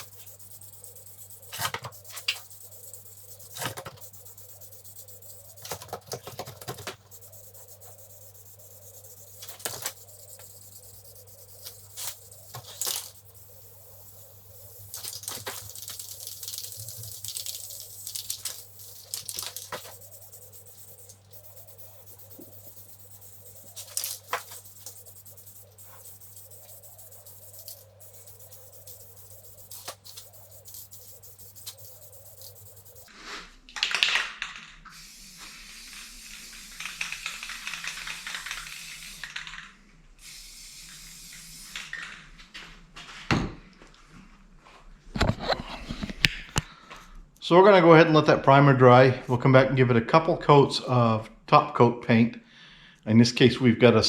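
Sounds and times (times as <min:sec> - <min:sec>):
aerosol can spraying hiss: 0:00.0 - 0:33.1, 0:34.9 - 0:39.3, 0:40.2 - 0:41.9.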